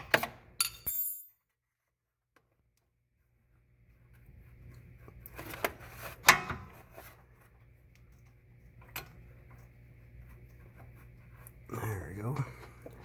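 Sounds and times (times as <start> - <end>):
metal clinks and scraping: 0.6 - 1.3.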